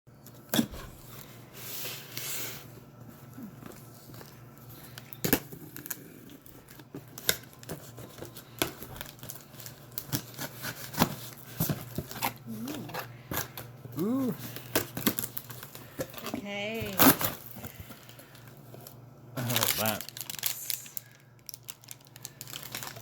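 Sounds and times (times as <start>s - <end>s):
cardboard packing crinkling: 0.2s - 23.0s
cardboard tearing: 7.0s - 15.8s, 16.8s - 17.5s, 19.4s - 21.0s.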